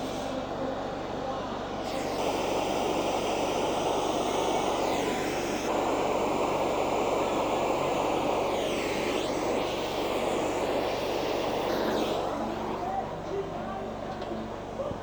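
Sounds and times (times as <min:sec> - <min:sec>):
gas torch flame roaring: 0:01.8 - 0:13.2.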